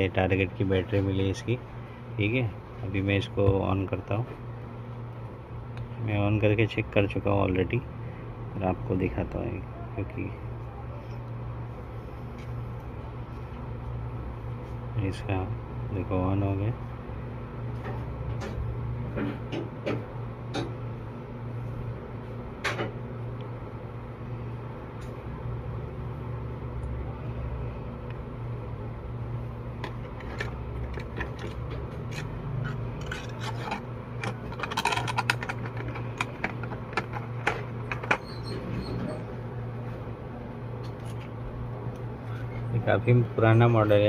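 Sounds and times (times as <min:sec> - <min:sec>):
low electrical hum: 0:00.0 - 0:44.0.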